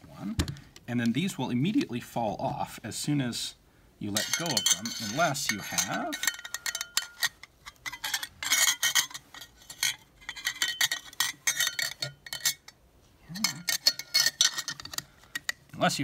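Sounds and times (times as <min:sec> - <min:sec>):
steel rifle parts clinking: 0:04.1 - 0:16.0.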